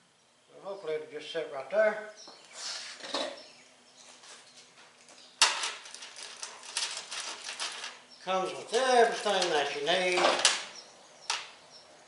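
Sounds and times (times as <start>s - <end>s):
faint rustle: 4.0s - 8.1s
hardware clatter: 5.4s - 11.5s
rattling of loose hardware: 5.4s - 11.5s.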